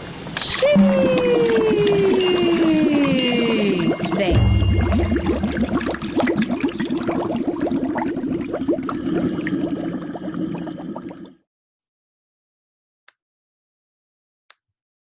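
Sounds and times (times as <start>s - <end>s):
bubbling gurgling water: 0.6s - 11.4s.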